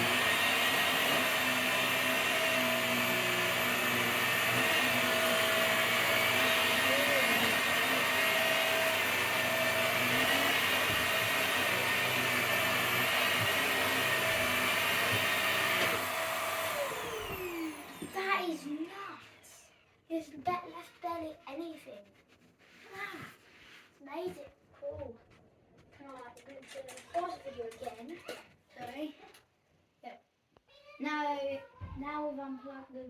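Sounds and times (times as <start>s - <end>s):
vacuum cleaner running: 0.0s - 19.4s.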